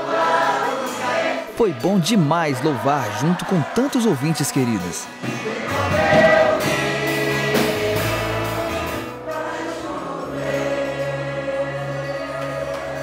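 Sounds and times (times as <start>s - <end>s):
group of voices singing: 0.0s - 13.0s
steady bass accompaniment: 5.2s - 13.0s.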